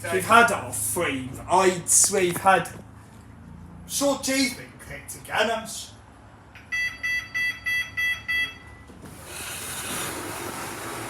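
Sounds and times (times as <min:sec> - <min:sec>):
lift beeper short high beeps: 0:06.7 - 0:08.9.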